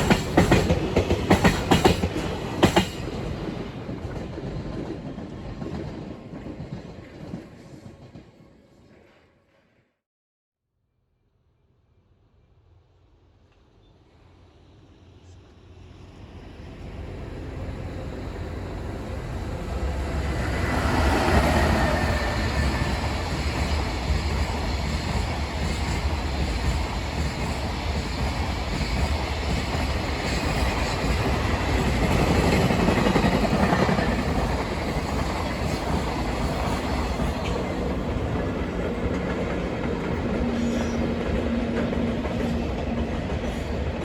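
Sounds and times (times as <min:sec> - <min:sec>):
freight train rumbling past: 0:00.0 - 0:09.2, 0:13.7 - 0:44.0.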